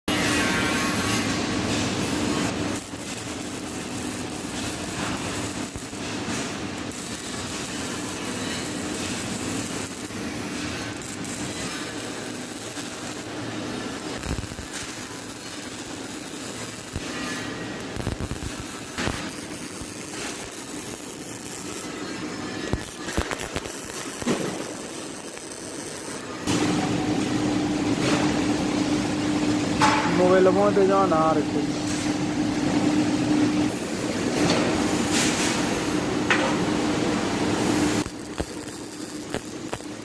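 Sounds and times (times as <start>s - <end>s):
welding arc crackling: 0.1s - 29.6s, 33.3s - 40.0s
sharp welding pops: 1.0s - 26.8s, 37.6s - 40.0s.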